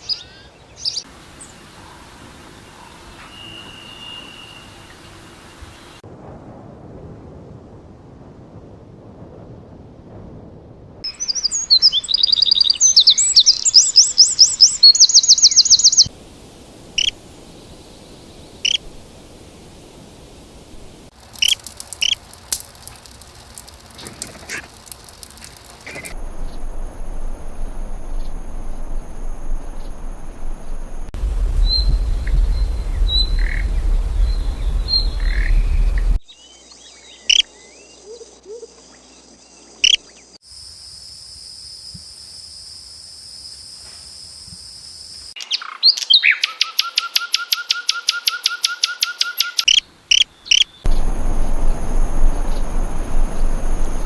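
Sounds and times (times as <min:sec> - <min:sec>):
birds chirping and calling: 0:00.0 - 0:02.0, 0:11.1 - 0:16.1, 0:17.0 - 0:17.2, 0:31.5 - 0:36.2, 0:37.2 - 0:38.8, 0:45.4 - 0:51.4
low rumble: 0:06.0 - 0:12.2, 0:25.3 - 0:36.2, 0:50.9 - 0:54.0
steady high hum: 0:26.2 - 0:36.2, 0:50.9 - 0:54.0.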